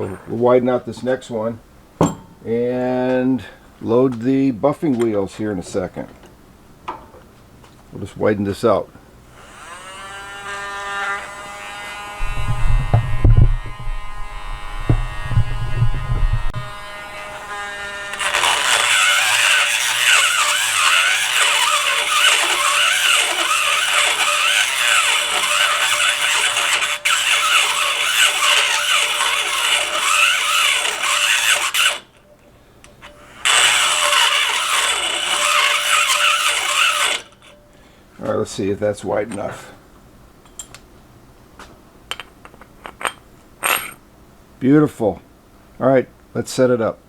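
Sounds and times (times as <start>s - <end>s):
rotary tool grinding steel: 9.3s - 32.2s, 33.0s - 37.6s
rotary tool whining: 9.3s - 32.3s, 32.9s - 37.6s
low knocks: 12.2s - 16.7s.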